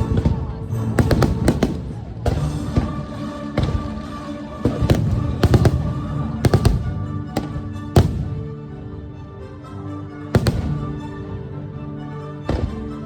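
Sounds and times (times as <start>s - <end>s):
orchestral music over loudspeakers: 0.0s - 13.0s
fireworks bangs: 1.0s - 8.6s, 10.4s - 11.2s.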